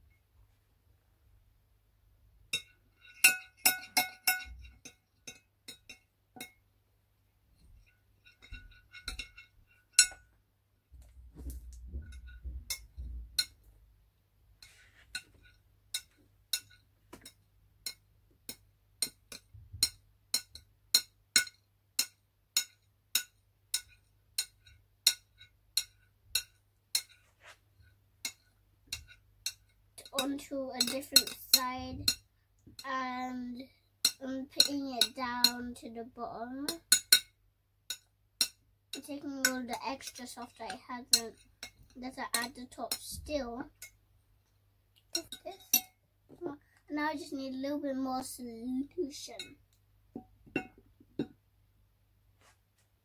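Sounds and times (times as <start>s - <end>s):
spoon clinking against bowl: 2.5s - 6.6s, 45.1s - 46.0s, 50.2s - 51.3s.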